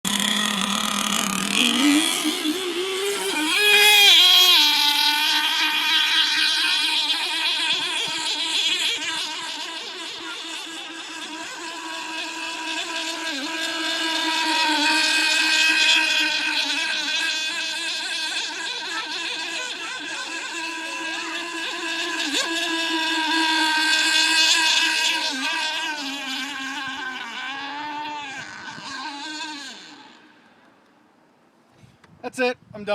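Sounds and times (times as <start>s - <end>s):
rc boat engine whine: 0.0s - 31.6s.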